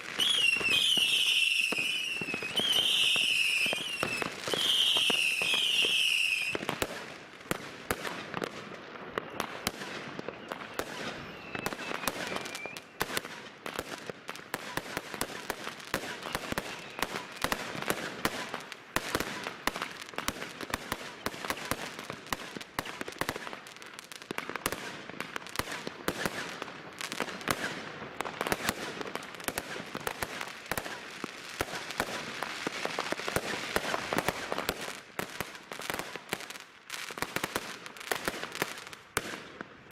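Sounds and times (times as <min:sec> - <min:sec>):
firework whistle: 0:00.0 - 0:06.8, 0:09.1 - 0:13.4, 0:14.5 - 0:20.0
fireworks bangs and crackles: 0:00.0 - 0:39.9.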